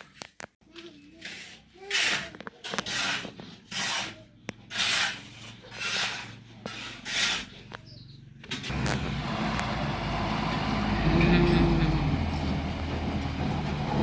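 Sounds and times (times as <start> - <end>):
shovel scraping sand: 1.2 - 7.7.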